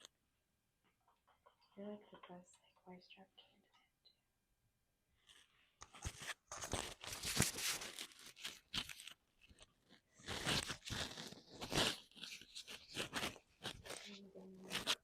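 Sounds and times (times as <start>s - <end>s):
rustling and crinkling: 5.2s - 15.0s.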